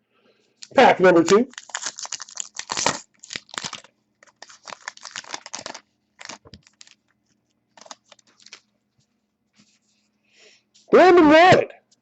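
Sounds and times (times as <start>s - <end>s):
card pack wrapper tearing: 0.6s - 7.1s, 7.8s - 8.7s
cards rustling: 0.6s - 8.8s.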